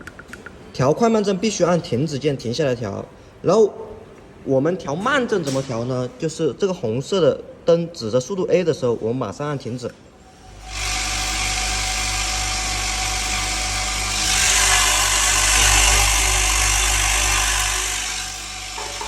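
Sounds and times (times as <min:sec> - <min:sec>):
bowl feeder humming: 0:10.4 - 0:19.0.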